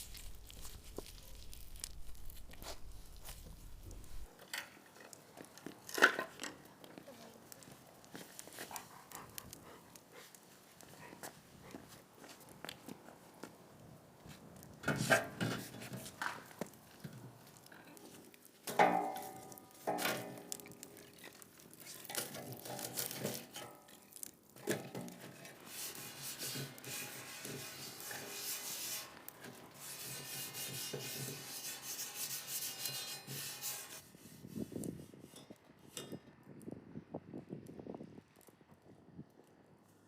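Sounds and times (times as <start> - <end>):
food scraping onto skewers: 0.0 - 6.5, 14.3 - 35.6.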